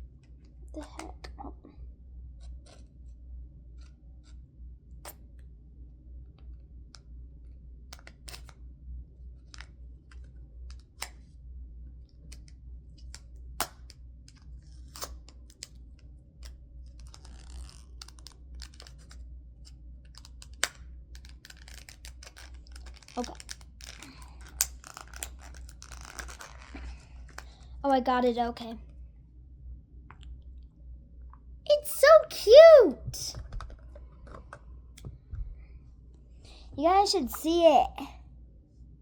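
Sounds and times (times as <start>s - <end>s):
packaging clicks: 20.2s - 26.6s
packaging crinkling: 21.2s - 27.5s.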